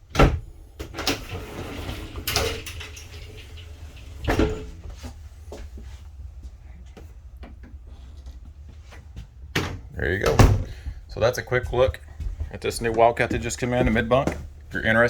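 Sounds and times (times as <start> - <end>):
cabinet door rattling: 9.6 - 10.7.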